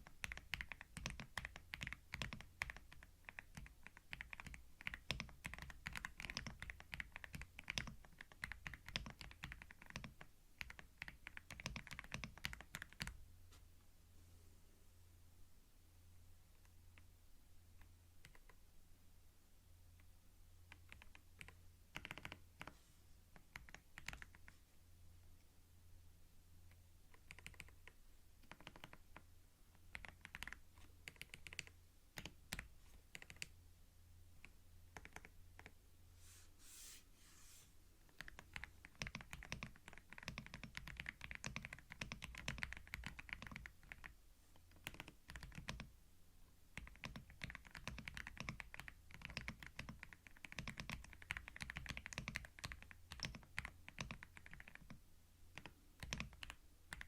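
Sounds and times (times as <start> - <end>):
typing on computer keyboard: 0.0 - 13.2, 18.2 - 18.6, 20.7 - 22.7, 23.4 - 24.6, 27.1 - 29.2, 29.8 - 33.5, 35.0 - 35.7, 38.1 - 45.9, 46.8 - 57.0.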